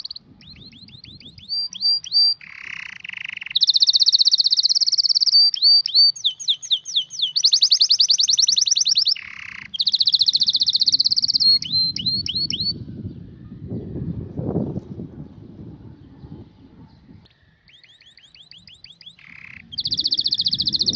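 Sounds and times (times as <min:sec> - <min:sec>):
canary singing: 0:00.0 - 0:12.8, 0:17.7 - 0:20.9.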